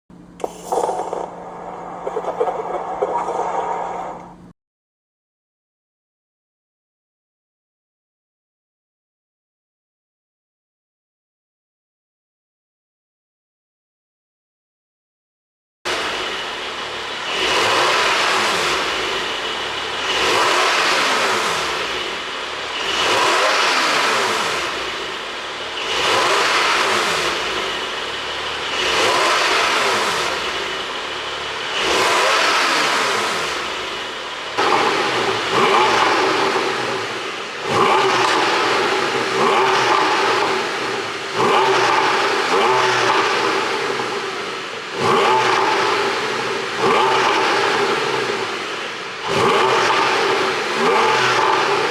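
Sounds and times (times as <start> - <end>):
car engine revving: 0.3 - 4.5, 15.9 - 51.9.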